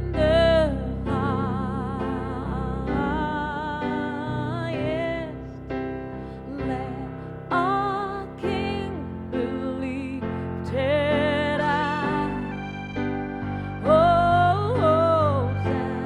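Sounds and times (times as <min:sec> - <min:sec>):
sustained chords and bass: 0:12.0 - 0:16.0.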